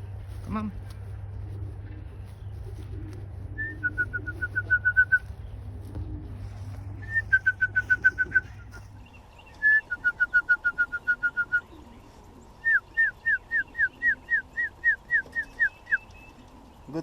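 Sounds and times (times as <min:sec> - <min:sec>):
person whistling: 0:07.1 - 0:08.5.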